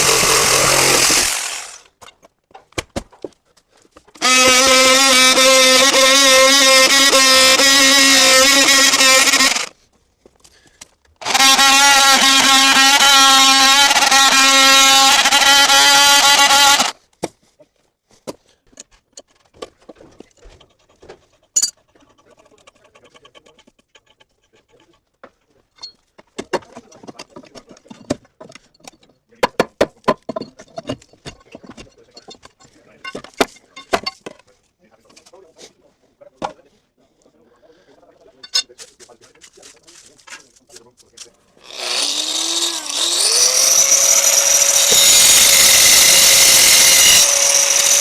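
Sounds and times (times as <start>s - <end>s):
power cutting tool whining: 0.0s - 1.9s, 4.2s - 9.7s, 11.2s - 17.0s, 41.6s - 48.0s.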